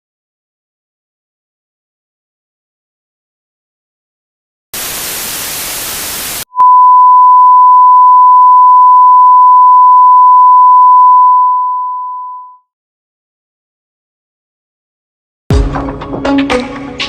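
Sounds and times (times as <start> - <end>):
white-noise static: 4.8 - 6.5
steady electronic tone: 4.8 - 12.6.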